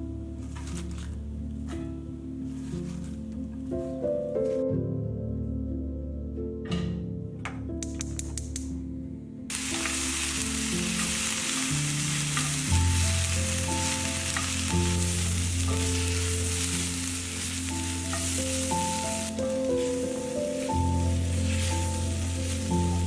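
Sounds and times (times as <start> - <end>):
soft instrumental music: 0.0 - 23.0
food sizzling in a frying pan: 9.5 - 23.0.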